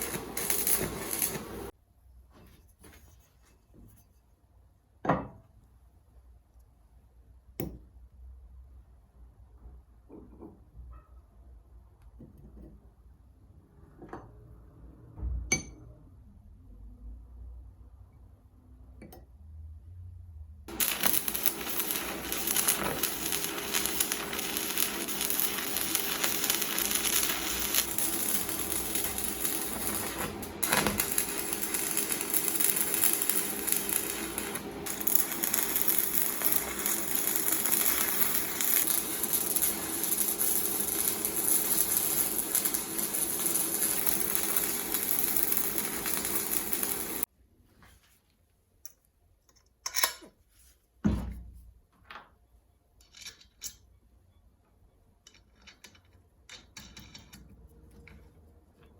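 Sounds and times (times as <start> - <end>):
harsh metalworking noise: 0.0 - 1.7, 20.7 - 47.3.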